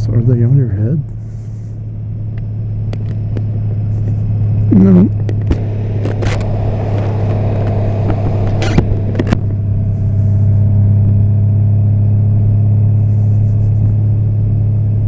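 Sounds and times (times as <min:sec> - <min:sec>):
motorcycle engine hum: 0:01.9 - 0:11.3
wind rush over microphone: 0:05.2 - 0:10.6
sharp clicks: 0:05.3 - 0:09.5.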